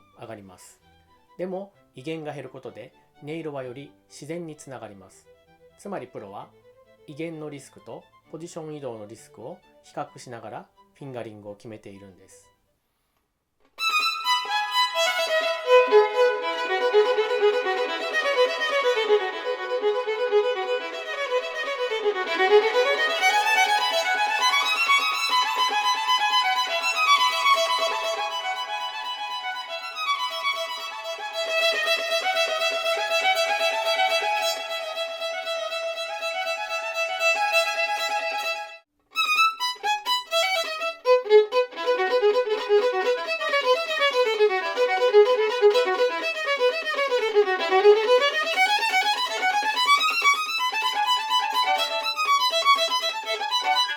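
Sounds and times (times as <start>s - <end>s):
solo violin playing: 13.8s - 53.9s.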